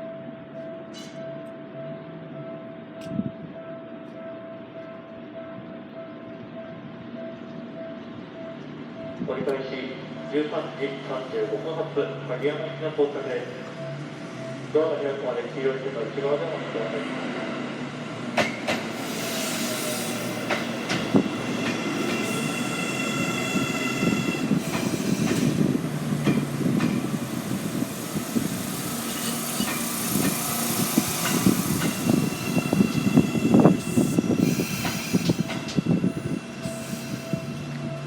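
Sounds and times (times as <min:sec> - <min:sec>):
train wheels clacking on rails: 0:18.2 - 0:38.0
high brake squealing: 0:21.4 - 0:25.7, 0:28.6 - 0:37.7.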